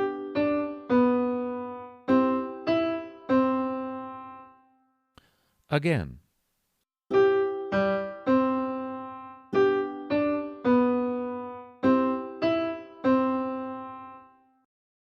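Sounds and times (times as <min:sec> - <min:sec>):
piano melody: 0:00.0 - 0:04.9, 0:07.1 - 0:14.7.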